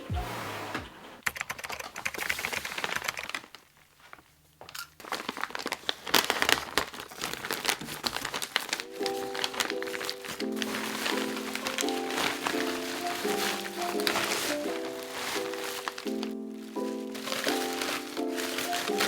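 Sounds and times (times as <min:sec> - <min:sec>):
music: 0:00.0 - 0:01.0, 0:08.8 - 0:19.0
packaging crinkling and rustling: 0:01.6 - 0:19.0.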